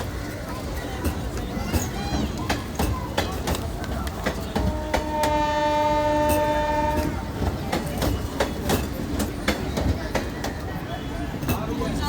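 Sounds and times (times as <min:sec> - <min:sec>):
train wheels clacking over rail joints: 0:00.0 - 0:12.0
locomotive horn blast: 0:04.6 - 0:07.3.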